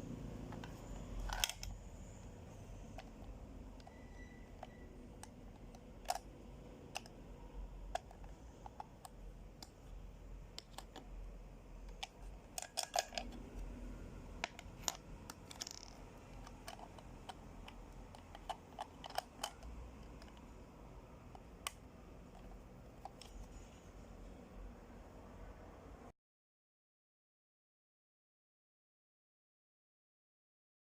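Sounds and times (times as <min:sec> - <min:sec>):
faint steady hum: 0:00.0 - 0:26.1
plastic toy clicks and taps: 0:14.4 - 0:20.4.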